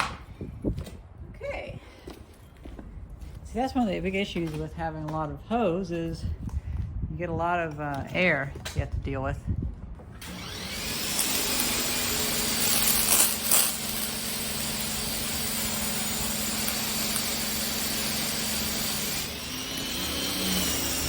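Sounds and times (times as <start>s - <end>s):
pressure washer spitting: 10.2s - 21.0s
pressure washer spraying water: 10.3s - 21.0s.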